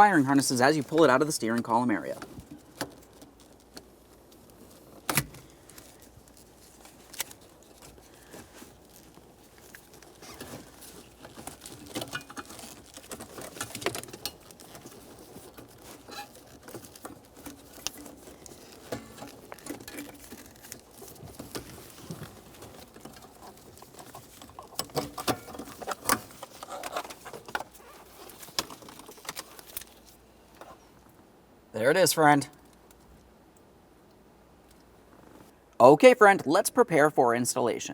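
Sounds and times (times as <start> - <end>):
plastic parts clicking and scraping: 0.9 - 30.8.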